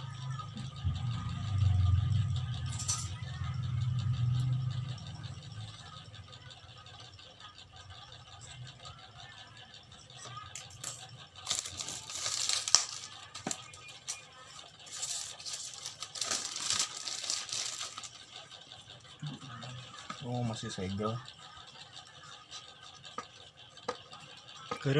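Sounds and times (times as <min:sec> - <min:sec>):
packaging rustling and crinkling: 0:11.5 - 0:13.1, 0:15.0 - 0:18.1.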